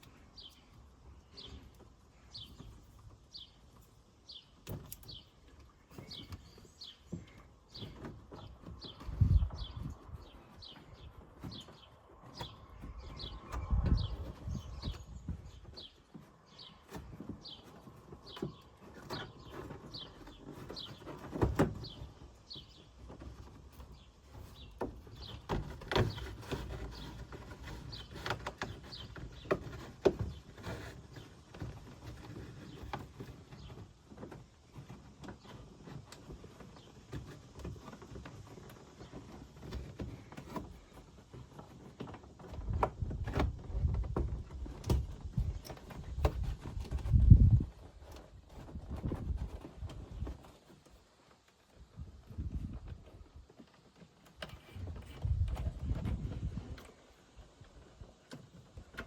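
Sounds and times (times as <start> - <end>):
bird chirping: 0.0 - 34.3.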